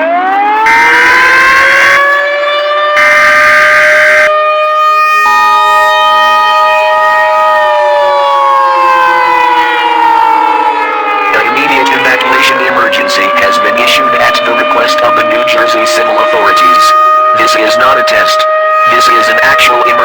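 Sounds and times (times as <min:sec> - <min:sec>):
civil defense siren: 0:00.0 - 0:20.0
two-tone attention signal: 0:03.0 - 0:04.3.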